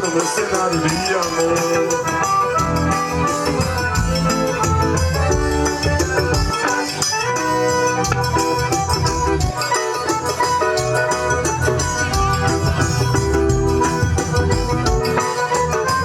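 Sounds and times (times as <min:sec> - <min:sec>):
accordion melody: 0:00.0 - 0:16.0
steady percussion beat: 0:00.0 - 0:16.0.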